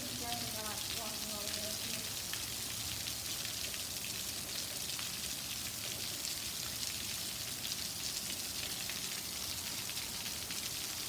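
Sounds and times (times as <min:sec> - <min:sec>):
heavy rain pattering: 0:00.0 - 0:02.8.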